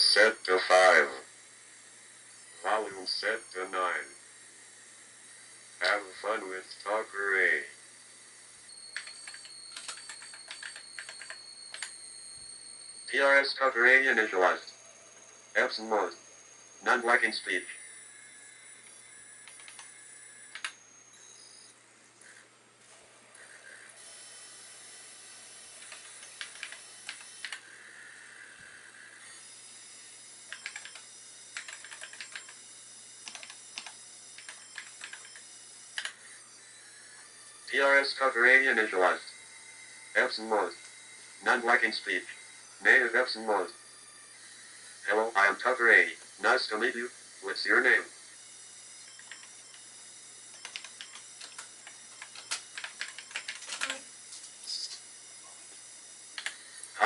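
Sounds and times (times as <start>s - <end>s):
steady low hum and hiss: 0.0s - 57.0s
computer keyboard typing: 8.8s - 12.0s, 19.4s - 19.9s, 20.5s - 20.8s, 25.6s - 27.6s, 30.4s - 32.6s, 33.2s - 36.2s, 49.0s - 49.8s, 50.5s - 54.0s.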